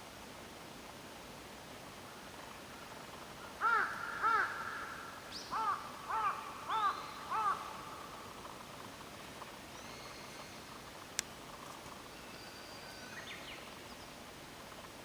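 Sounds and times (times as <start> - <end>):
bird calling: 3.6 - 8.3.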